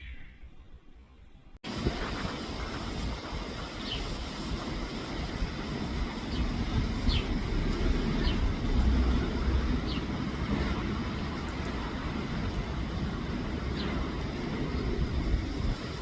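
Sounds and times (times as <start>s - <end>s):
bird chirps high falling: 0.0s - 0.5s
low rumbling background noise: 0.3s - 16.0s.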